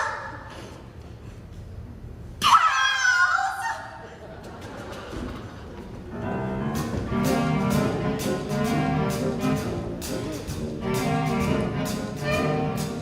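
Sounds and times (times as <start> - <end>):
show tune with brass: 6.1 - 13.0.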